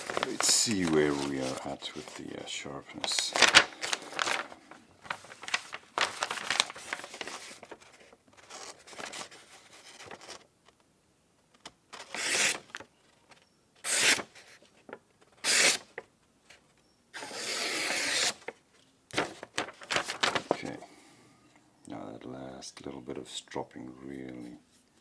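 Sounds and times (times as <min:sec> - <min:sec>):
knife slicing paper: 0:00.0 - 0:01.6, 0:12.0 - 0:12.8, 0:13.8 - 0:14.3, 0:17.2 - 0:18.5
paper rustling: 0:00.0 - 0:10.8, 0:11.5 - 0:20.8.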